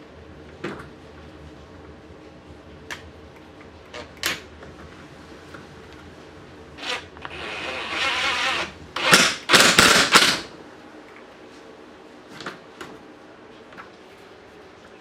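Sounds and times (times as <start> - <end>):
loud clatter bursts: 6.8 - 10.5
screws grinding and rattling: 6.8 - 10.5.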